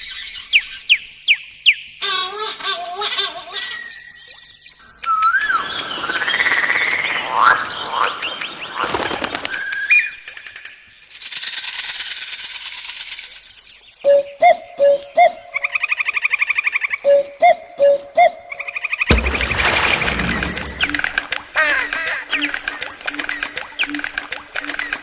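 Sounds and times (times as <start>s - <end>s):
chirping bird trills: 0.0s - 6.0s.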